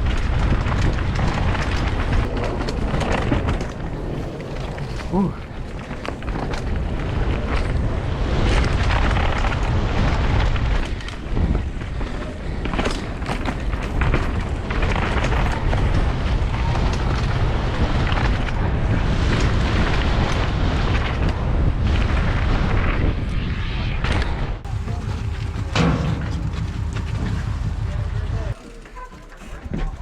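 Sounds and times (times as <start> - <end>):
wind buffeting microphone: 0.0 - 23.6, 24.3 - 28.6
bike knocks and rattles: 24.6 - 30.0.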